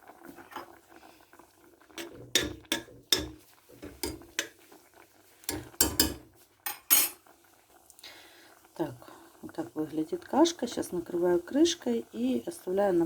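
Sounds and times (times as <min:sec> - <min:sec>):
utensil knocking on cooking pot: 0:02.0 - 0:04.6, 0:05.5 - 0:06.3.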